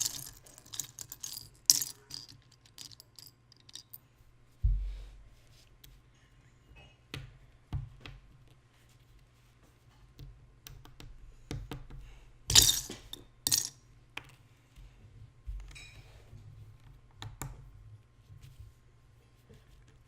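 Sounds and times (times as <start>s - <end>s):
loose pieces clattering: 0.0s - 4.0s, 12.5s - 13.8s.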